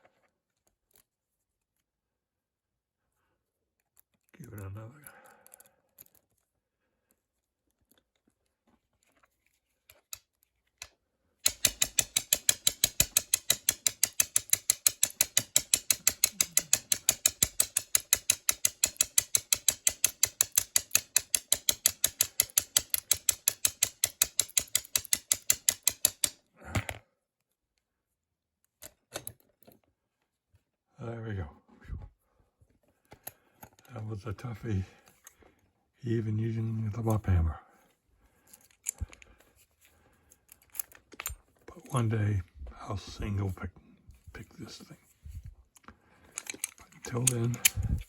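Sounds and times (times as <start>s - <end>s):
sharp metal taps: 11.5s - 26.4s.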